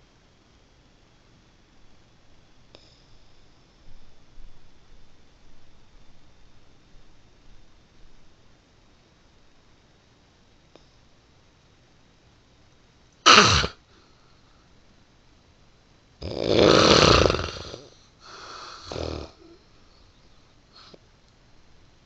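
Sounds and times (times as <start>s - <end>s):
person snoring: 13.3s - 13.8s, 16.2s - 19.6s
faint breath: 13.9s - 14.8s, 17.8s - 21.0s.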